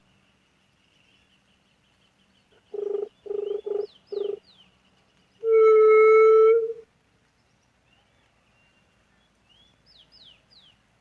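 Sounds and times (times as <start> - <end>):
faint insect hum: 0.1 - 6.9
small bird chirping: 0.8 - 4.8
dove caller hoots: 5.4 - 6.8.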